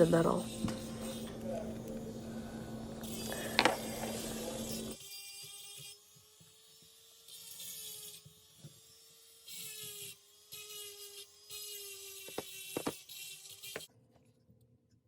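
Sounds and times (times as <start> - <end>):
steady low hum: 0.0 - 5.0.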